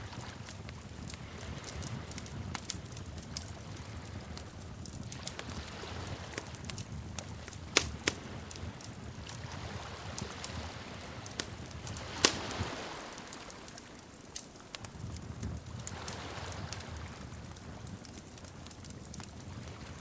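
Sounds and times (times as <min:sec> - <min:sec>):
low rumble of flame: 0:00.0 - 0:20.0
wood fire crackling: 0:00.0 - 0:20.0
sharp pops of fire: 0:00.1 - 0:20.0.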